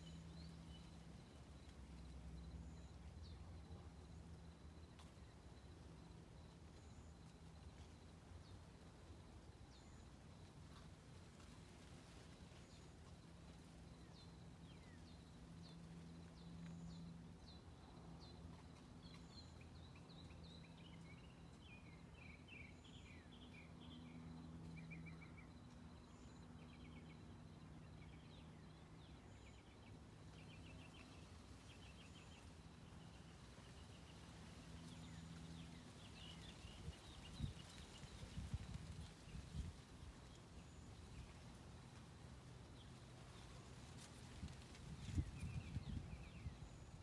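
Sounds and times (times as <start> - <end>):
small birds chirping: 27.9 - 41.6.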